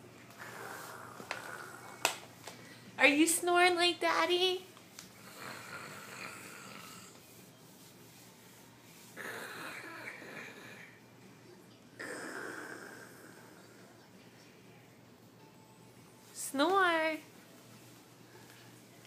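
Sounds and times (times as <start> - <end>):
toddler pretending to snore: 5.2 - 7.2, 9.2 - 11.0.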